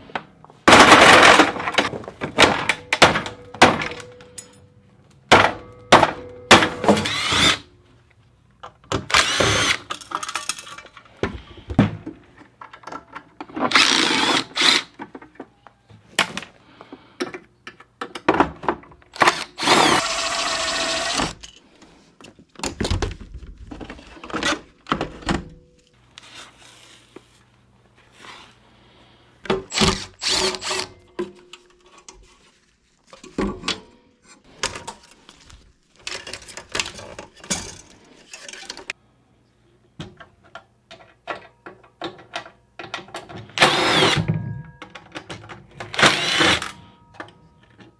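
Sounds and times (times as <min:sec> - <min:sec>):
knocks and clanks of parts: 0:00.1 - 0:07.6, 0:08.6 - 0:15.6, 0:16.2 - 0:20.1, 0:22.2 - 0:25.8, 0:36.0 - 0:39.0, 0:40.0 - 0:47.9
cordless power driver whining: 0:07.0 - 0:07.6, 0:09.1 - 0:09.8, 0:19.2 - 0:21.4, 0:43.6 - 0:44.2, 0:45.9 - 0:46.7.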